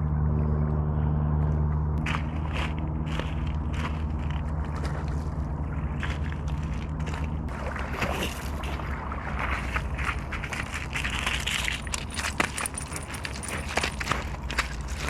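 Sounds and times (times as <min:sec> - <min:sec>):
rough background noise: 0:09.8 - 0:15.0.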